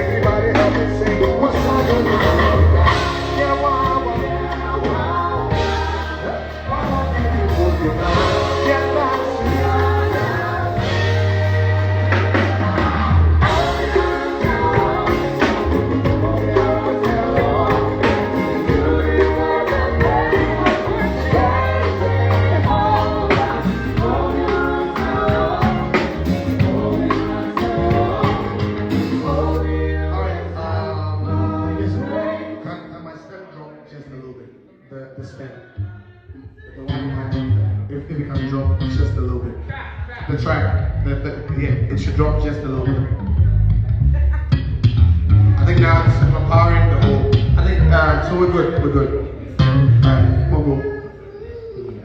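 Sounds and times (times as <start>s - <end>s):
person singing: 0.0s - 33.0s
gospel band playing: 0.0s - 33.6s, 35.8s - 52.0s.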